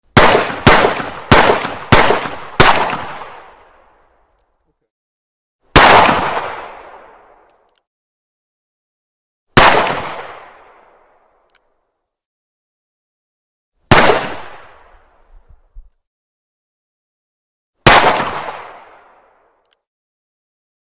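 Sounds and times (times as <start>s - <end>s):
pistol gunshots echoing: 0.2s - 3.8s, 5.8s - 7.4s, 9.6s - 10.8s, 13.9s - 14.9s, 17.8s - 19.1s.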